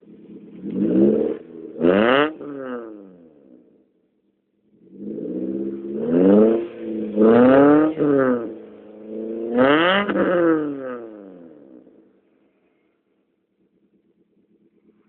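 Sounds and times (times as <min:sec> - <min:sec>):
car engine revving: 0:00.0 - 0:03.6, 0:04.6 - 0:12.8.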